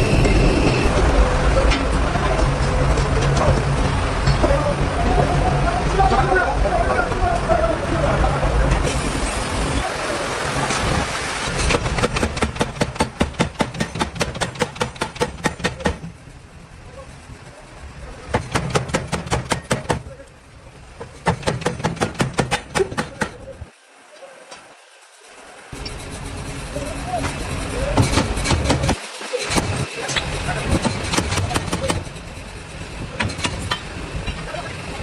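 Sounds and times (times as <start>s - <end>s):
rapid hammer blows on metal: 11.5s - 16.2s, 18.3s - 20.2s, 21.0s - 23.6s, 26.8s - 34.4s
low machine hum: 25.2s - 29.0s.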